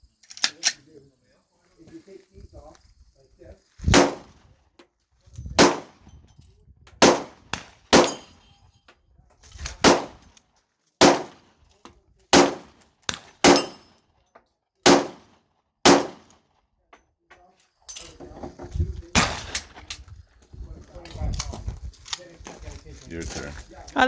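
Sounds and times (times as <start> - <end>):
pistol shots: 3.9 - 4.4, 5.6 - 6.0, 7.0 - 8.4, 9.8 - 10.3, 11.0 - 11.5, 12.3 - 13.9, 14.8 - 16.4, 19.2 - 19.9.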